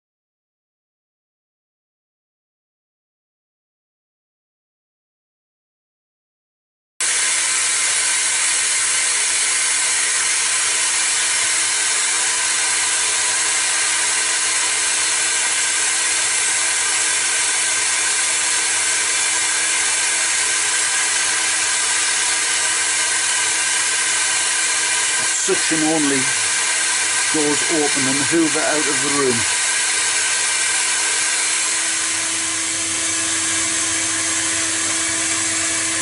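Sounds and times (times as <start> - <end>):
vacuum suction hiss: 22.7 - 36.0.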